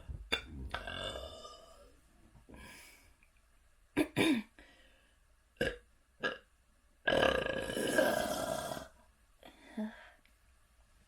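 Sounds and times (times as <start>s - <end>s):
person burping: 0.2s - 1.9s, 5.6s - 6.4s, 7.1s - 8.9s.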